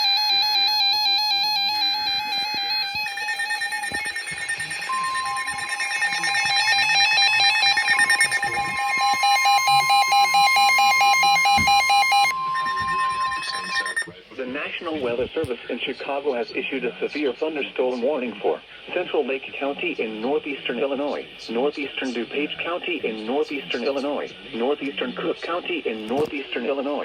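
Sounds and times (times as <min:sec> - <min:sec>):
repeating electronic beeps: 0:00.0 - 0:14.1
steady warning alarm tone: 0:00.0 - 0:14.2.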